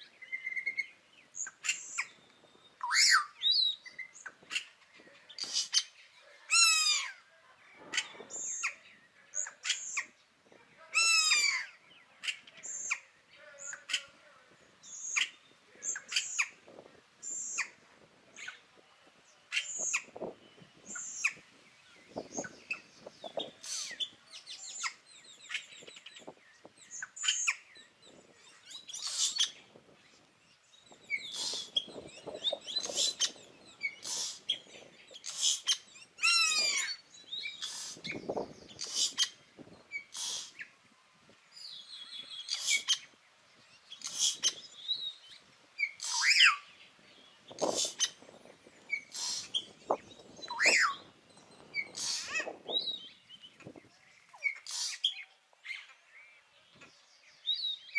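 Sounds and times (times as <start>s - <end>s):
bird song whistles and chatters: 0.2s - 4.7s, 19.5s - 30.1s, 30.8s - 40.7s, 41.6s - 43.2s, 43.8s - 57.9s.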